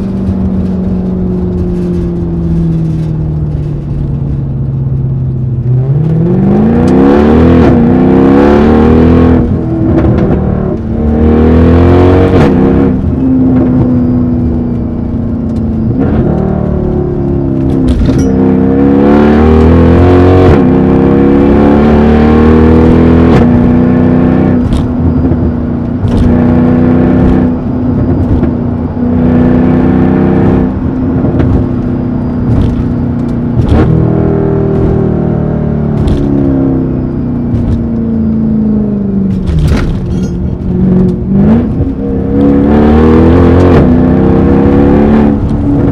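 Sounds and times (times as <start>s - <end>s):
exhaust cracks at gear shifts: 0.0s - 6.2s, 24.5s - 29.6s, 30.6s - 44.0s, 45.0s - 45.9s
car engine accelerating hard: 0.0s - 45.9s.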